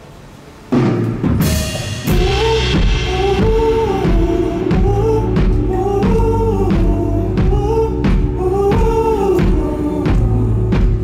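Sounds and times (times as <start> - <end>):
cymbal crashes: 0.8 - 6.0
live pop-rock band playing: 0.9 - 11.0.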